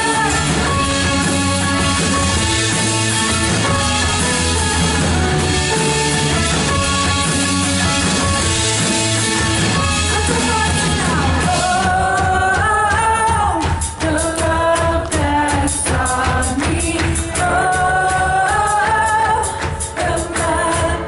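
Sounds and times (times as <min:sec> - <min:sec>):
person singing: 0:00.0 - 0:02.3, 0:10.1 - 0:21.0
worship band with drums and guitar: 0:00.0 - 0:21.0.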